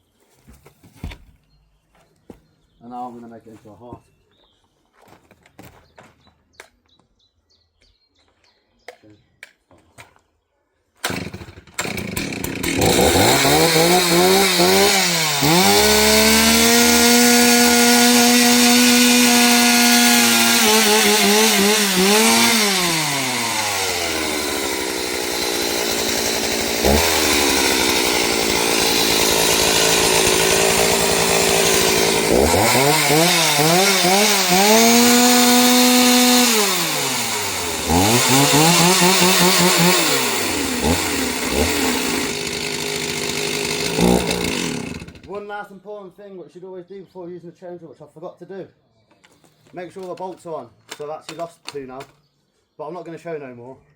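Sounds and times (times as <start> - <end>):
chainsaw cutting wood: 11.0 - 45.4.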